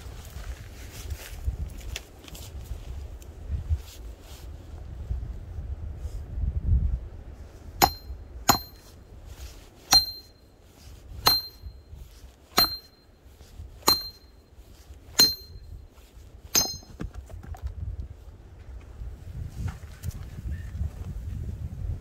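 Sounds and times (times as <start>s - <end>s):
metal hammer striking metal: 7.8s - 8.9s, 9.9s - 10.4s, 11.2s - 11.7s, 12.6s - 13.0s, 13.8s - 14.3s, 15.2s - 15.7s, 16.6s - 17.0s.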